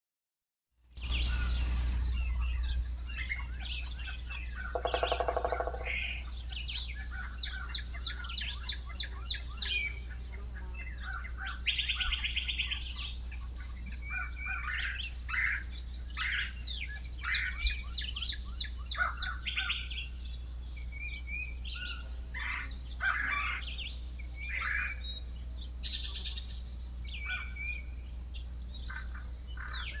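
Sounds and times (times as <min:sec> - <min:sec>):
low hum: 0:00.8 - 0:19.0
birds chirping and trilling: 0:00.9 - 0:30.0.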